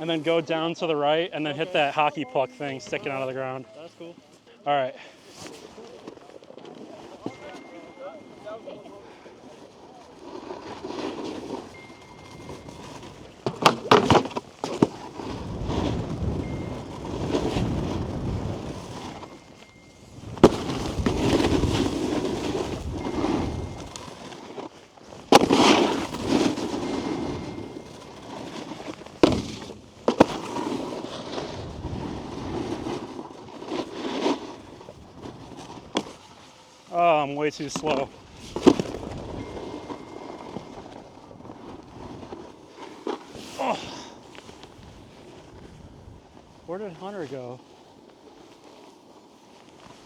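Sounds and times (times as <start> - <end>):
snowboard scraping over snow: 0.0 - 50.0
snowboard knocks and slaps: 10.5 - 19.4, 20.2 - 36.2, 37.6 - 44.9.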